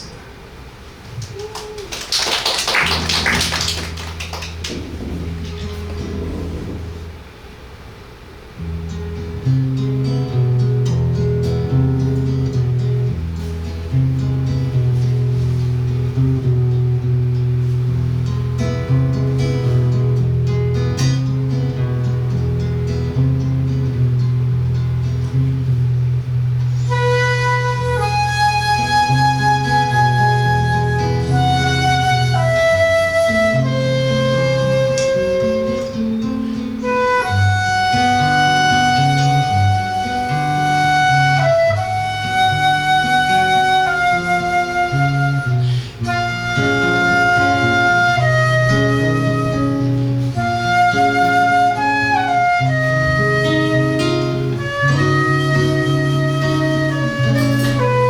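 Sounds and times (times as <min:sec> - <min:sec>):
guitar plucking bass and chords: 0:08.6 - 0:26.8, 0:52.7 - 0:58.0
flute melody: 0:26.7 - 0:58.0.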